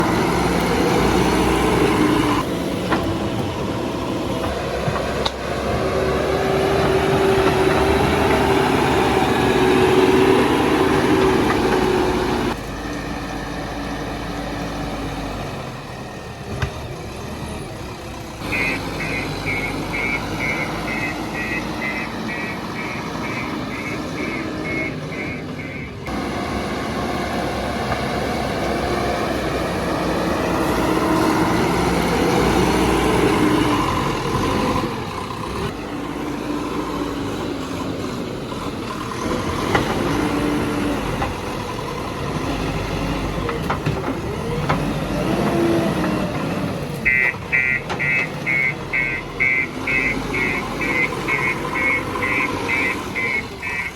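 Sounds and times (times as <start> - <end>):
diesel engine revving: 0.0 - 53.9
reversing alarm beeping: 18.4 - 26.1, 47.0 - 53.9.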